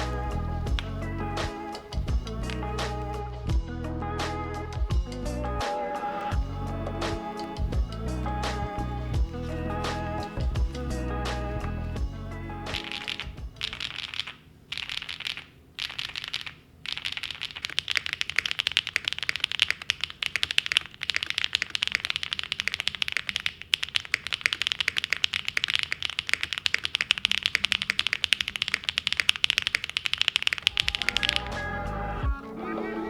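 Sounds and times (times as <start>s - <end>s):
typing on mechanical keyboard: 12.8s - 31.5s.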